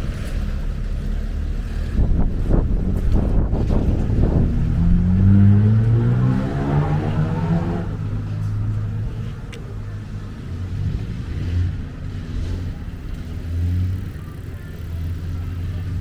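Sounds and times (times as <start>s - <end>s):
car engine passing: 0.0s - 16.0s
road traffic rumble: 0.0s - 16.0s.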